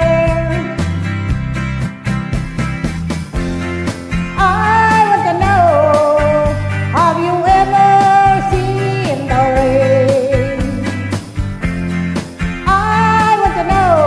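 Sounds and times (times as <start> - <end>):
person singing: 0.0 - 1.0, 4.3 - 11.2, 12.5 - 14.0
country-rock band playing: 0.0 - 14.0.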